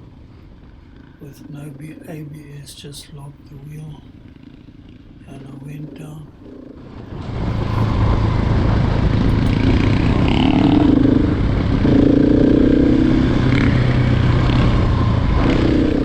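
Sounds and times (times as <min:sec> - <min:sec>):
motorcycle engine revving: 0:03.7 - 0:16.0.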